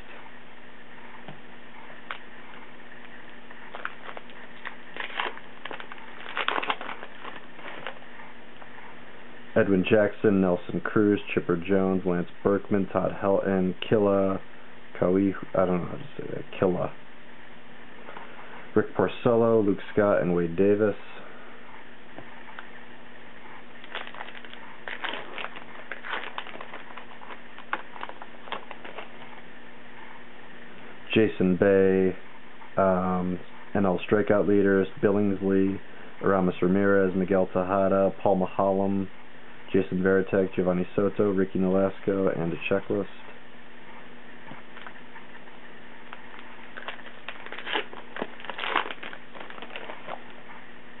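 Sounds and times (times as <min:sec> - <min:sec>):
trading cards rustling and clicking: 0:03.0 - 0:08.0, 0:23.8 - 0:29.4, 0:46.1 - 0:50.4
foil pack crinkling: 0:03.0 - 0:08.1, 0:23.8 - 0:29.3, 0:46.1 - 0:50.4.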